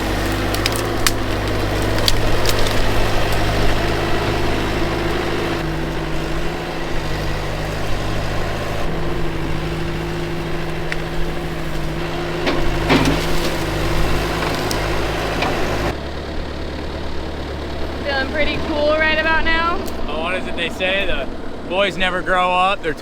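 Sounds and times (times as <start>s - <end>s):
wood breaking cracks: 0.0s - 5.3s, 10.5s - 15.9s
skid steer engine running: 0.0s - 23.0s.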